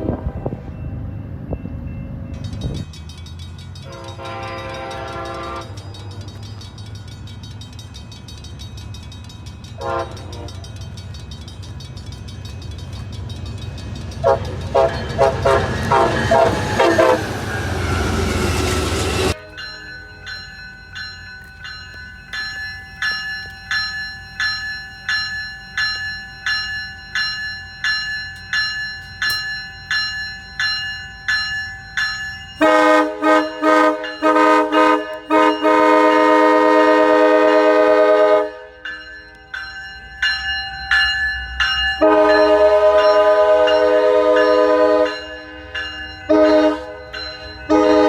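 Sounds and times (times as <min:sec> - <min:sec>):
bell ringing steadily: 0:00.4 - 0:48.0
multi-chime train horn blasts: 0:03.8 - 0:06.2, 0:09.8 - 0:10.8, 0:14.2 - 0:20.4, 0:32.6 - 0:39.0, 0:42.0 - 0:48.0.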